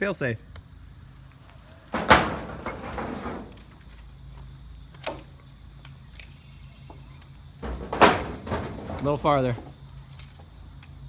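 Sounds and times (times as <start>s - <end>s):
ringing metal clank: 7.6s - 9.6s.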